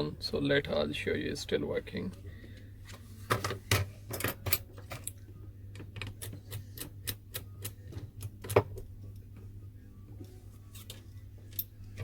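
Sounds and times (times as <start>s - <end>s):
faint low hum: 0.0s - 12.0s
small parts clicking and tapping: 4.1s - 9.3s.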